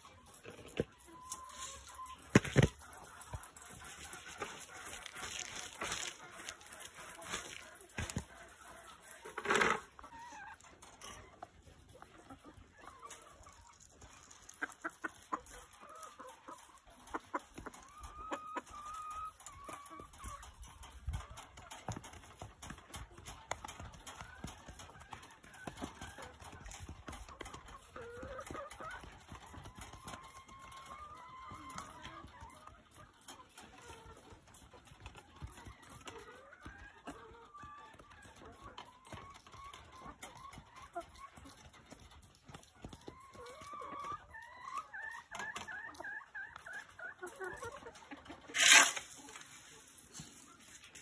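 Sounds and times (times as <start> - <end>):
hens calling: 0.0 - 20.4
hens clucking: 0.0 - 51.0
light clicks and scrapes: 47.6 - 51.0.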